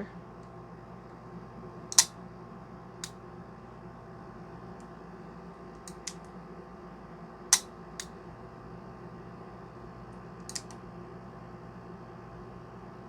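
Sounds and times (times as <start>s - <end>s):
pistol dry-fire click: 1.9s - 2.1s.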